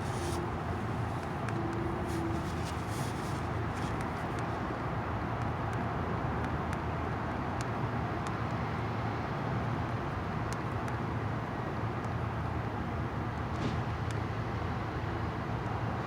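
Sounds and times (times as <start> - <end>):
vehicle traffic rumble: 0.0 - 6.3.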